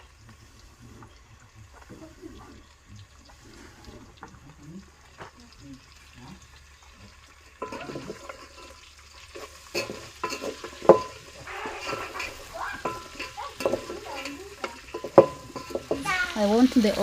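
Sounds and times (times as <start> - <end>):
onions sizzling in a pan: 0.0 - 17.0
spoon scraping and clinking on pan: 7.4 - 17.0.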